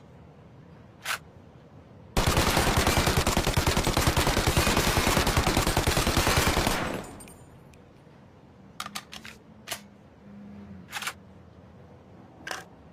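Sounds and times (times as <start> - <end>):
submachine gun automatic burst: 2.2 - 7.2.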